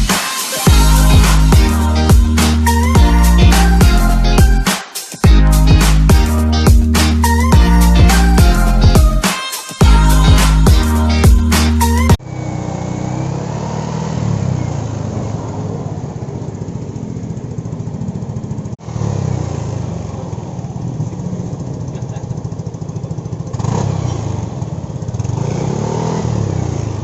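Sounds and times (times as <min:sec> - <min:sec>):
motorcycle engine idling: 0:15.1 - 0:18.8, 0:19.4 - 0:25.7.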